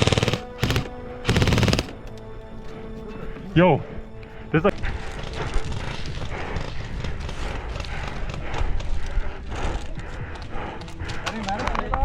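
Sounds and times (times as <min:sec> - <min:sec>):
fast footsteps: 0:04.6 - 0:12.0.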